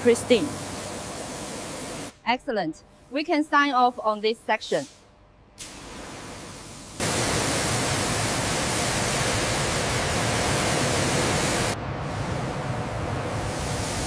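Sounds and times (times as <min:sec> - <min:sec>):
steady rushing hiss: 0:00.0 - 0:02.2, 0:05.7 - 0:14.0.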